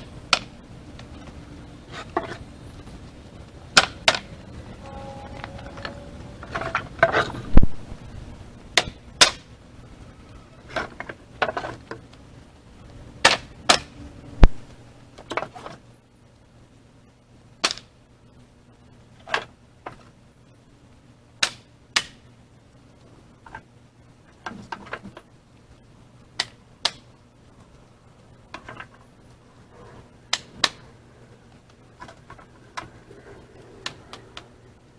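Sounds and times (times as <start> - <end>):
scraping and rustling: 1.0 - 3.2.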